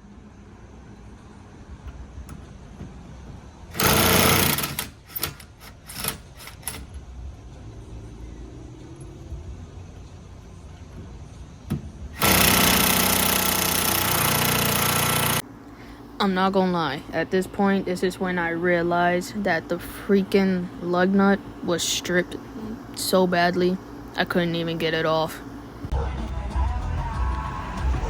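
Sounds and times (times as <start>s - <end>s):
impact wrench hammering: 1.8s - 7.0s, 10.9s - 15.4s.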